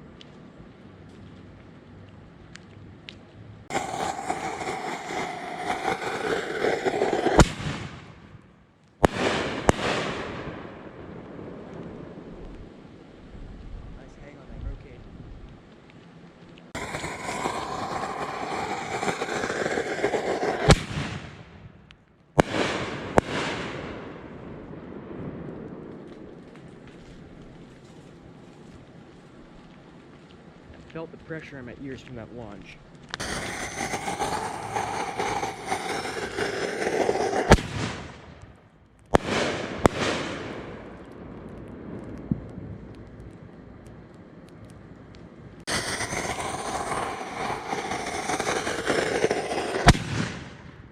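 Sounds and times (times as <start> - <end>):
faint crackling: 0.0 - 21.0
firework hissing and crackling: 3.6 - 8.2, 9.0 - 12.6, 16.7 - 21.5, 22.4 - 24.4, 30.7 - 38.4, 39.1 - 44.0, 45.6 - 50.9
firework bangs: 3.7 - 12.6, 16.7 - 21.8, 22.4 - 27.0, 33.1 - 38.5, 39.1 - 43.2, 45.6 - 50.9.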